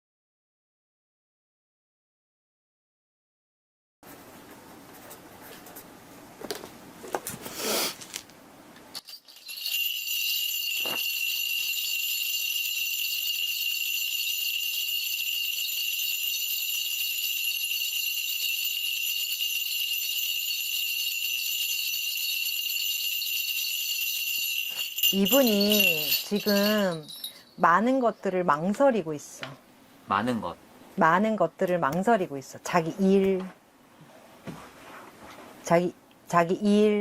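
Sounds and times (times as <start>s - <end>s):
bell cluster jingling: 9.0s - 28.2s.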